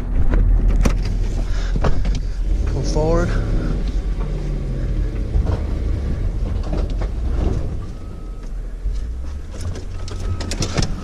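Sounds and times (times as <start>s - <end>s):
truck engine running: 0.0s - 11.0s
back-up alarm beeping: 7.7s - 11.0s.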